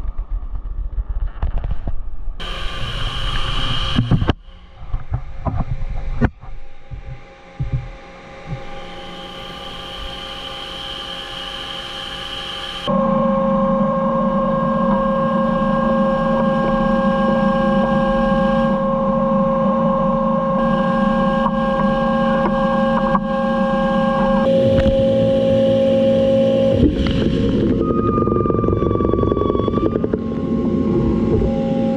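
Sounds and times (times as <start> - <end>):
machine tool cutting metal whine: 2.4 - 12.9, 20.6 - 31.9.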